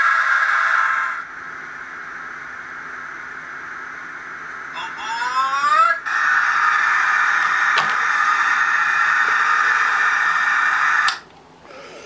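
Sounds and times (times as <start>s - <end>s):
click: 11.1s - 11.4s.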